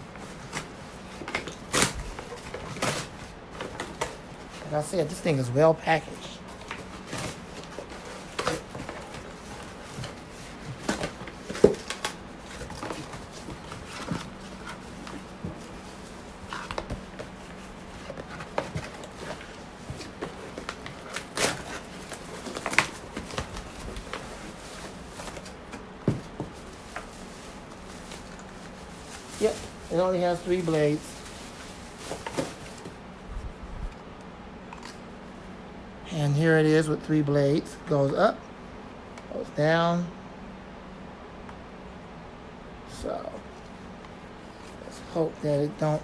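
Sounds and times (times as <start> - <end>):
packaging rustling: 0.1 - 33.0.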